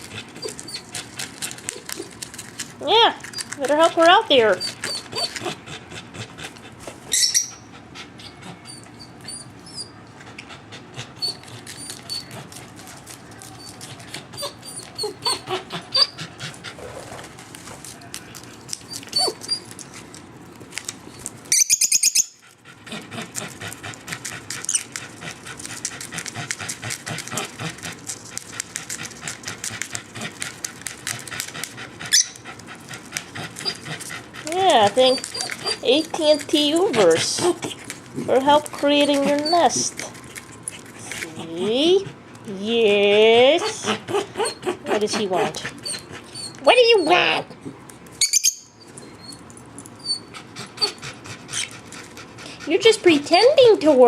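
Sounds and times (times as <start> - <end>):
dog panting rapidly: 0.0 - 17.9, 22.1 - 47.8, 50.0 - 54.0
bird chirps: 48.2 - 48.7.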